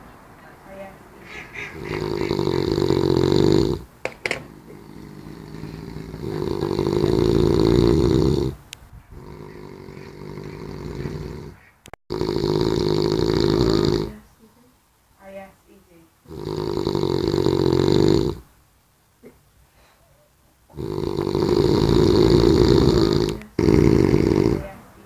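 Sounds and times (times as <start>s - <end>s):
quiet breaths: 0.0s - 14.8s, 19.2s - 25.0s
man snoring: 1.7s - 14.2s, 16.2s - 18.5s, 20.7s - 24.8s.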